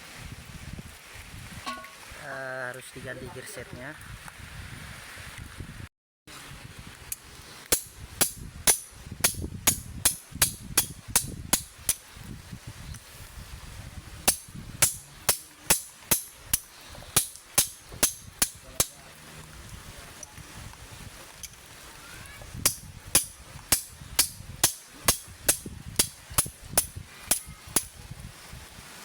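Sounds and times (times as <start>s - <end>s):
hammer striking metal: 1.7s - 2.0s, 7.7s - 12.0s, 14.3s - 19.0s, 22.6s - 27.9s.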